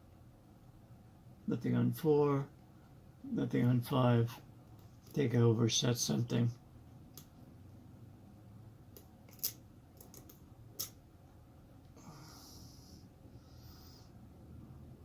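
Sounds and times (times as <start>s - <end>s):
lock-picking tools clicking: 9.0s - 11.0s.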